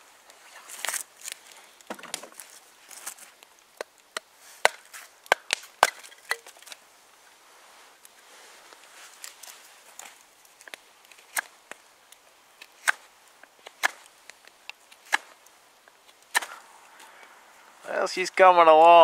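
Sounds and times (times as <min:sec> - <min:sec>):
knife carving wood: 0:00.7 - 0:06.8, 0:09.2 - 0:16.6.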